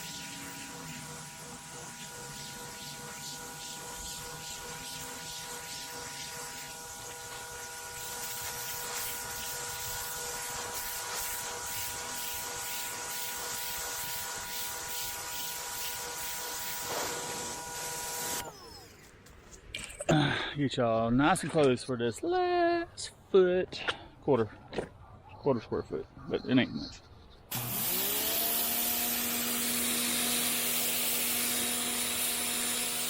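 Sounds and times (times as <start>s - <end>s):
pressure washer spraying water: 0.0s - 18.4s, 27.5s - 33.0s.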